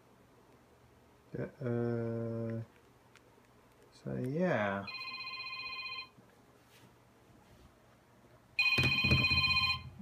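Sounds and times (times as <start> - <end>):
electronic telephone ringing: 4.8 - 6.2, 8.6 - 10.0.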